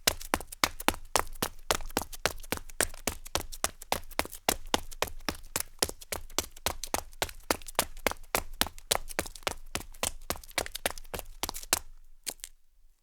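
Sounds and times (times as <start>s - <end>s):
footsteps on gritty concrete: 8.6s - 12.6s
grit scraping under soles: 11.4s - 12.5s.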